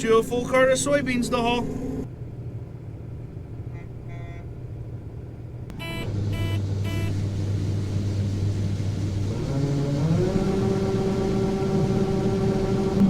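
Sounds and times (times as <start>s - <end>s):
combine engine drone in cab: 0.0s - 13.0s
short high beeps: 5.8s - 7.1s.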